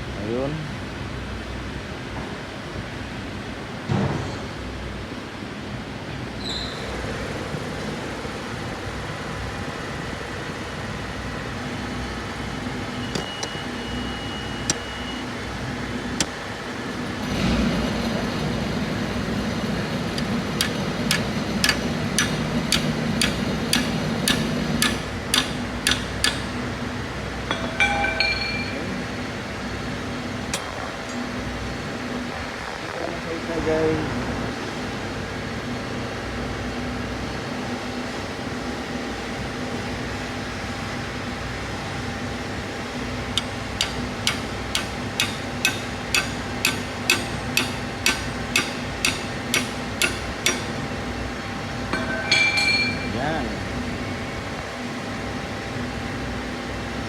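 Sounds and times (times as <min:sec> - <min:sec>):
workshop hum: 0:00.0 - 0:57.0
metal tools clinking and tapping: 0:27.5 - 0:28.9, 0:43.4 - 0:50.8, 0:51.9 - 0:53.2
ringing metallic clinks: 0:27.5 - 0:29.1, 0:51.9 - 0:53.2
sharp taps: 0:43.4 - 0:50.7.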